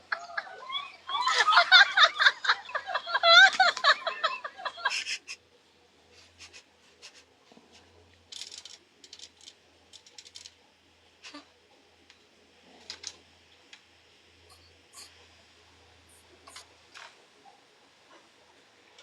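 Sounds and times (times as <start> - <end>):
high-pitched cackling voice: 0.0 - 5.4.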